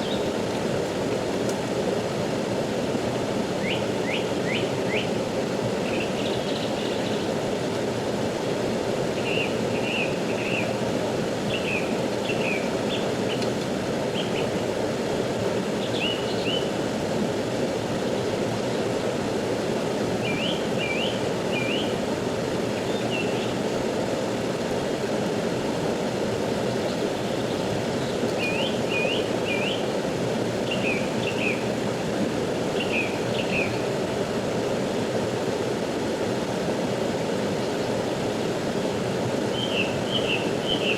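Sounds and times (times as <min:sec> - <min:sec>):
river flowing: 0:00.0 - 0:40.9
bird chirping: 0:28.4 - 0:29.8.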